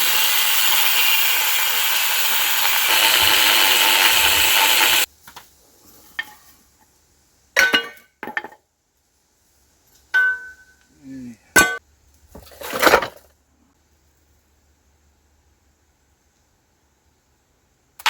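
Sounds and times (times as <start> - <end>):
metal scrape: 0.0 - 5.1.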